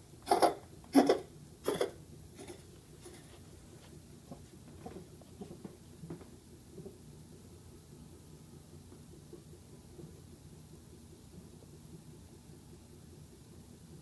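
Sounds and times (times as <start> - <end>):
person coughing: 0.2 - 2.6.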